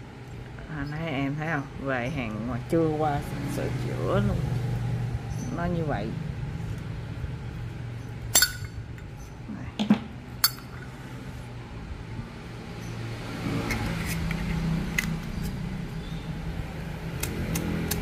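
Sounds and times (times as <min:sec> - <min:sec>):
low hum: 0:00.0 - 0:09.6
metal lighters clinking and clicking: 0:08.3 - 0:08.8.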